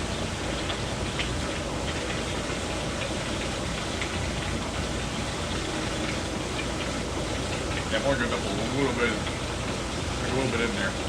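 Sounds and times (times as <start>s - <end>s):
hot tub water churning and bubbling: 0.0s - 11.0s.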